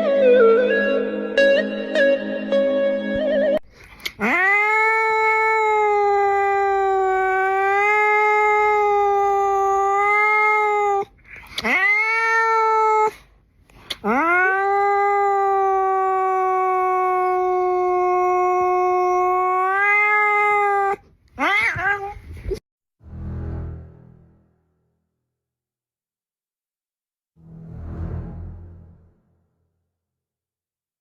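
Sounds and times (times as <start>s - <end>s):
cat yowling: 4.2s - 13.3s, 14.0s - 22.2s.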